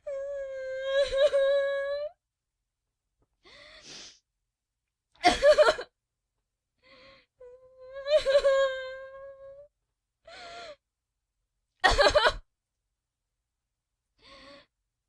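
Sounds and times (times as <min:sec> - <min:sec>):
woman sobbing and wailing: 0:00.1 - 0:02.2, 0:05.2 - 0:05.9, 0:07.5 - 0:09.6.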